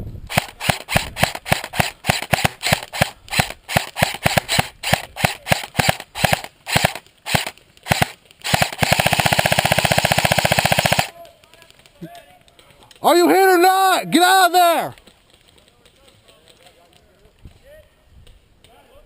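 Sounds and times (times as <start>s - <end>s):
airsoft rifle firing: 0.3s - 11.2s.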